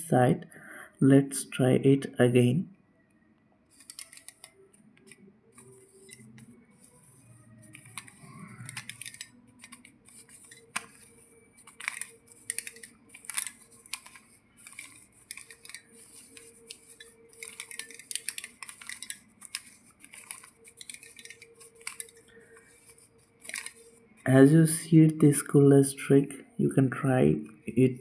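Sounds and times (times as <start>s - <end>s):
puzzle cube clicking as twisted: 3.7s - 6.9s, 7.6s - 23.9s.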